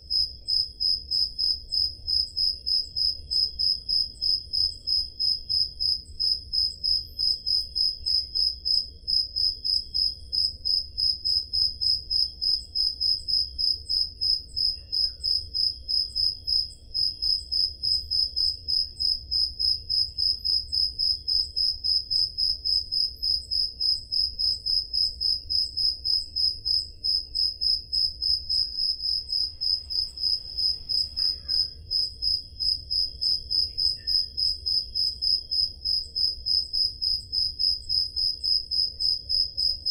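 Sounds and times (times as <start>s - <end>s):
faint low cricket trill: 0.0s - 39.9s
cricket chirping loudly: 0.1s - 39.9s.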